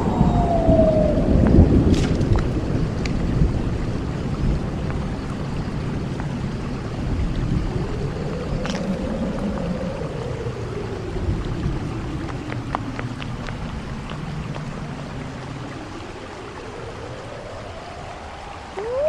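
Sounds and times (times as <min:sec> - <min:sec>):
small clicks or drips: 0:08.6 - 0:09.7, 0:12.1 - 0:14.9
faint moaning tone: 0:15.8 - 0:19.0.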